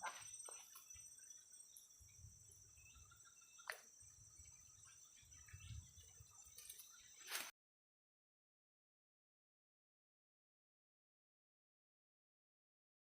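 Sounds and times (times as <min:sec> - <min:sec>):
high-pitched insect drone: 0:00.0 - 0:07.5.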